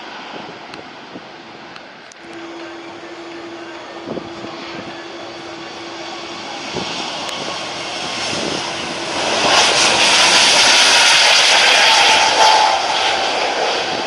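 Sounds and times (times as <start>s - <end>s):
jet airliner engines: 0.0s - 14.0s.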